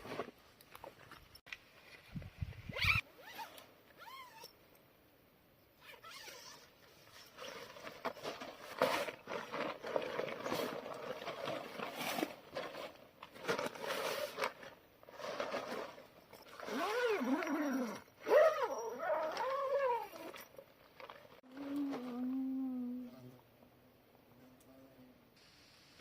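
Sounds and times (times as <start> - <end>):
rustling and scraping: 0.0 - 3.7, 6.1 - 22.4.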